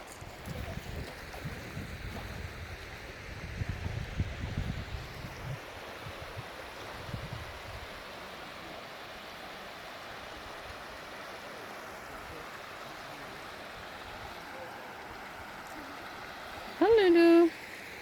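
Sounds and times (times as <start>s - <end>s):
wind rumbling on microphone: 0.0s - 7.9s
mountain stream rushing: 4.5s - 18.0s.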